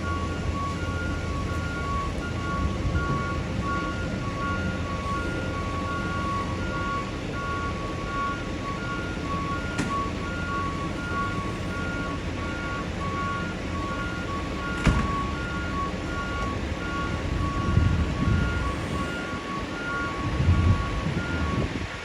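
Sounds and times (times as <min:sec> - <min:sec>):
two-tone electronic warning signal: 0:00.0 - 0:22.0
vehicle and street rumble: 0:00.0 - 0:22.0.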